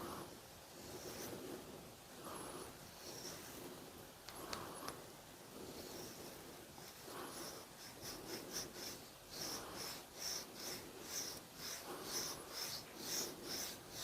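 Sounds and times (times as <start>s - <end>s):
file rasping on wood: 7.2s - 14.0s.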